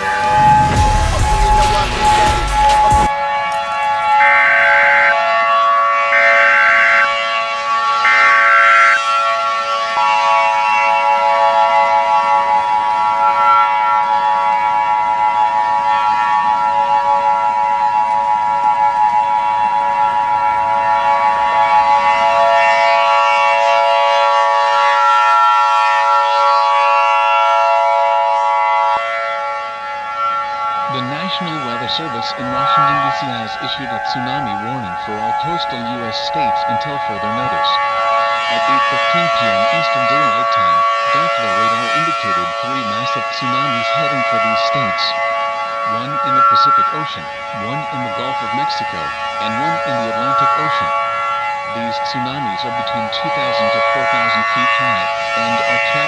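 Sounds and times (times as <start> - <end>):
screeching data bursts: 4.2 - 5.2, 6.1 - 7.1, 8.1 - 9.0
steady tones: 4.2 - 5.2, 6.1 - 7.1, 8.1 - 9.0
two-tone attention signal: 4.2 - 5.2, 6.1 - 7.1, 8.1 - 9.0.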